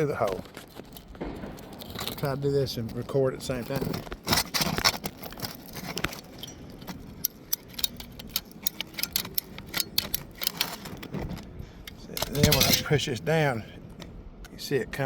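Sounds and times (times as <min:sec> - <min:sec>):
caulking gun clicks and rattling: 0:00.4 - 0:13.1.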